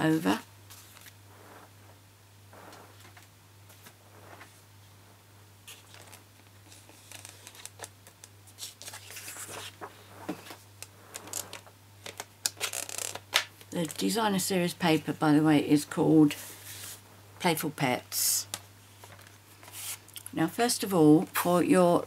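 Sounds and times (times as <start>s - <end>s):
paper rustling: 0.7s - 1.6s, 5.6s - 13.2s, 16.2s - 17.0s, 19.0s - 20.1s.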